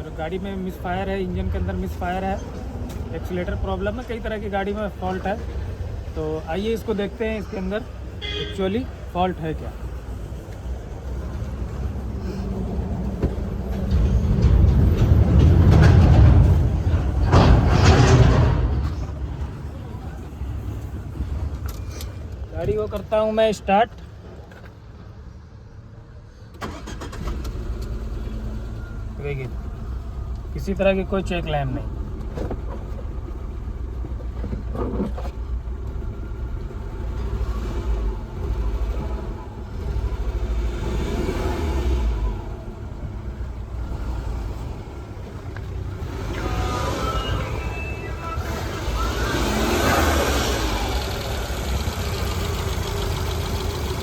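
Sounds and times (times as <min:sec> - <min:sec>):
vehicle rumbling and rattling: 0:00.0 - 0:54.0
misfiring car engine running: 0:48.4 - 0:54.0.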